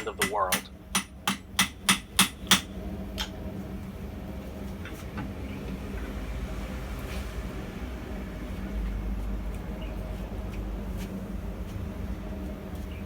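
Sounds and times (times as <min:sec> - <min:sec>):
hammer ringing on steel: 0:00.0 - 0:02.7
steady low hum: 0:00.0 - 0:13.0.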